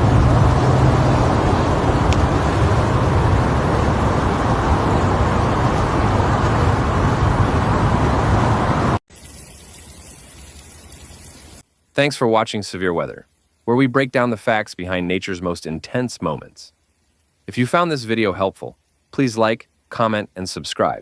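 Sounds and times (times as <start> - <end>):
loud rushing noise: 0.0 - 9.0
low hum: 0.0 - 11.6
faint hiss: 9.1 - 21.0.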